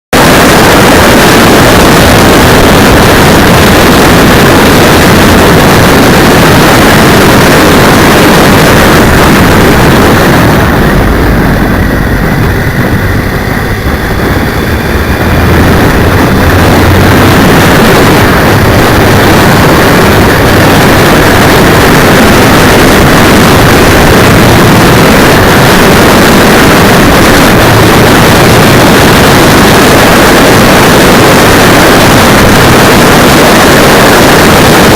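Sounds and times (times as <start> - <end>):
motorcycle noise: 0.0 - 34.9
wind rush: 0.0 - 34.9.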